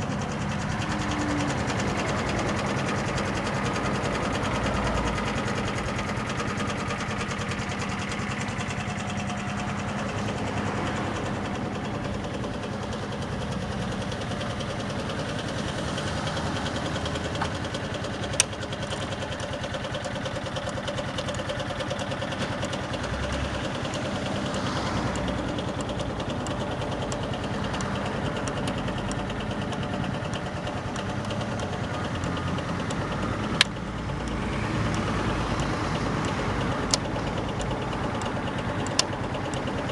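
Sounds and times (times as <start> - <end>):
scooter engine idling: 0.0 - 39.9
sharp clicks: 17.0 - 39.9.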